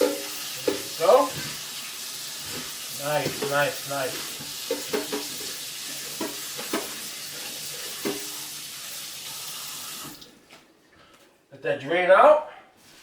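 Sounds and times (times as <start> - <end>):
tap water running into a bowl: 0.0 - 10.3.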